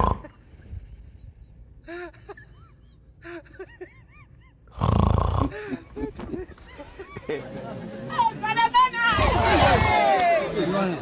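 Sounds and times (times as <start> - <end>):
man snoring: 4.7 - 5.6.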